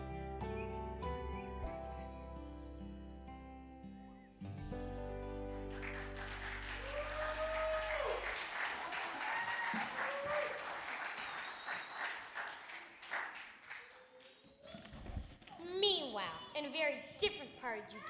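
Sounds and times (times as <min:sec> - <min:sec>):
audience applause: 0:05.4 - 0:14.6.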